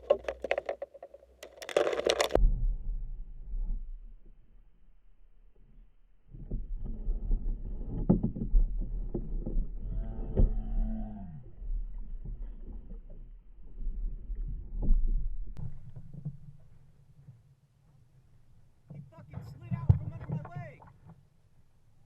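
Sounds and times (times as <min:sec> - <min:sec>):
low rumble: 0:02.3 - 0:16.0.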